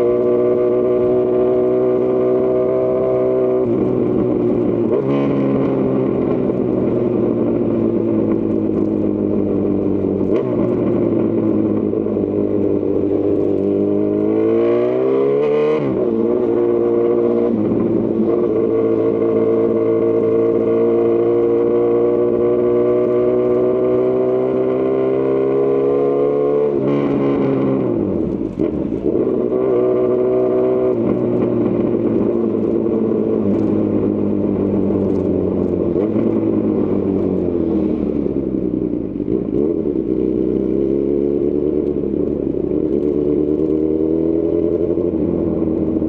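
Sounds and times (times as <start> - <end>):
motorcycle engine revving: 0.0 - 46.0.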